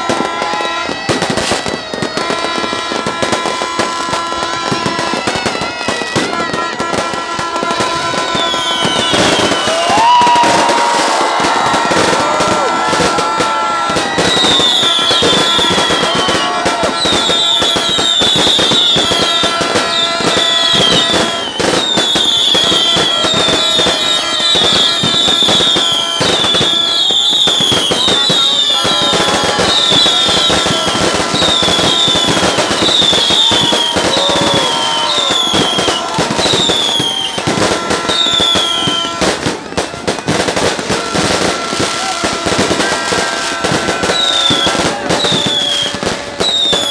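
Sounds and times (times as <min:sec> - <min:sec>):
fireworks crackling and popping: 0:00.0 - 0:46.9
high whistles falling in pitch: 0:07.8 - 0:39.3, 0:43.9 - 0:46.9.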